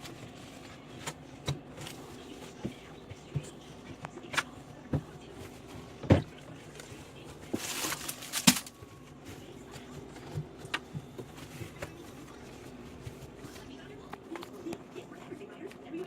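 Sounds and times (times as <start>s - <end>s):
items knocking and clicking: 7.5s - 8.9s.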